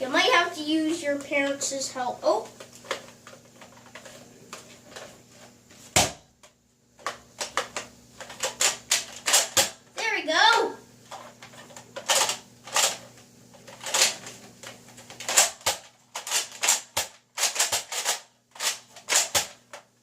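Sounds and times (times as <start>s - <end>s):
plastic toy blaster clicks: 15.2s - 19.6s.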